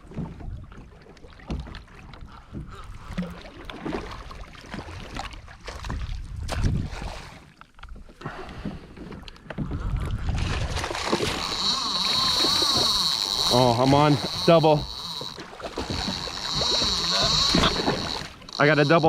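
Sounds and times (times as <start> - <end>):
water sloshing against kayak: 0.0 - 19.0
wind on microphone: 5.8 - 7.2, 9.6 - 14.4
fishing reel drag buzzing: 11.1 - 19.0.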